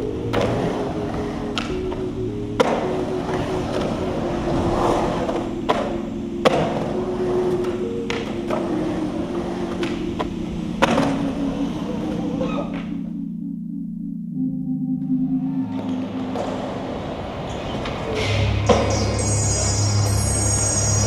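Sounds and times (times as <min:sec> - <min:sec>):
skateboard wheels rolling on concrete: 0:00.0 - 0:12.9, 0:15.7 - 0:21.0
background music: 0:00.0 - 0:21.0.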